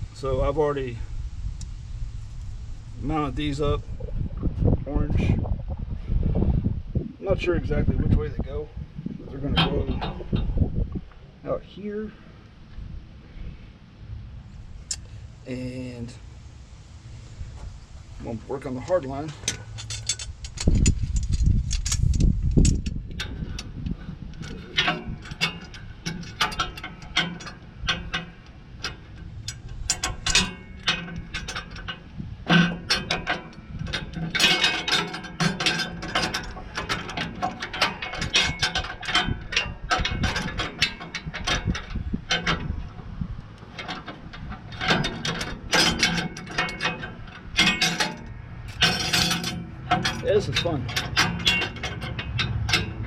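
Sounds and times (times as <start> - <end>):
low rumble: 0.0 - 32.6
metal fittings clinking: 43.7 - 53.0.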